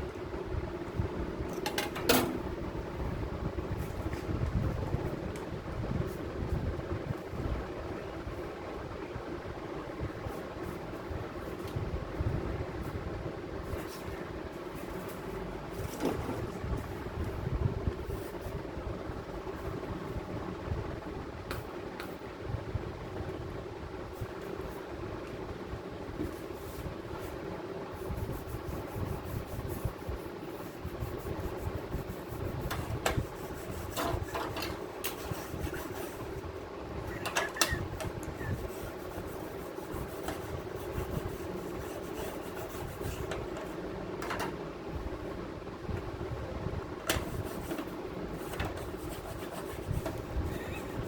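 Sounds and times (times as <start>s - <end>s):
steady mechanical hum: 0.0s - 51.0s
sharp clicks and knocks: 43.3s - 44.6s.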